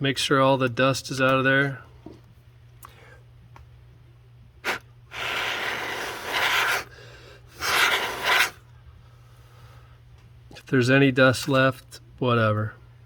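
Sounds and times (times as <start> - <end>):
air blowing blasts: 4.6 - 8.6.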